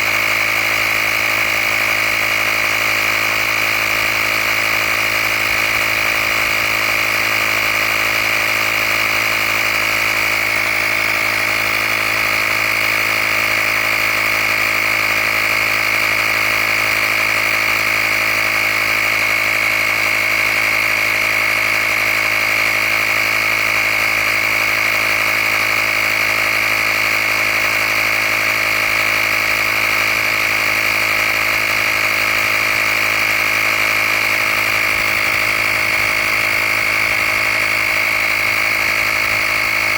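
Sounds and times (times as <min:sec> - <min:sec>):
air compressor whine: 0:00.0 - 0:39.9
low motor hum: 0:25.6 - 0:39.9.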